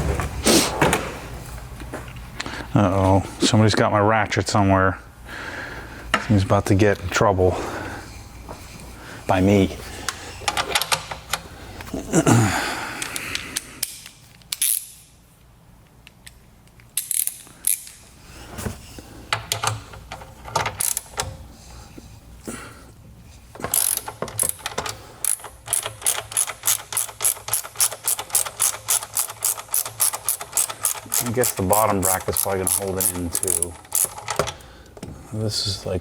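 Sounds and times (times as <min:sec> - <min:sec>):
hand ratchet clicking: 0:13.0 - 0:15.1, 0:17.0 - 0:18.0, 0:19.4 - 0:21.4, 0:23.6 - 0:34.6.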